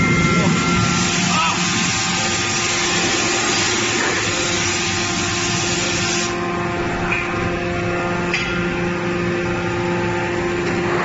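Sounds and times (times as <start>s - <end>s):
factory machinery hum: 0.0s - 11.0s
loud hiss: 0.4s - 6.4s.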